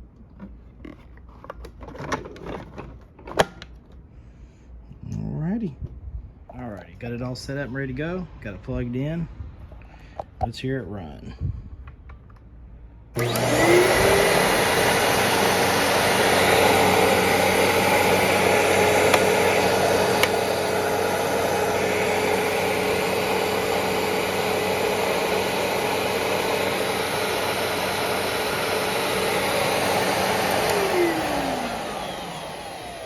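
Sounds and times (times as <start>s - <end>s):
vacuum cleaner motor whine: 13.2s - 33.0s.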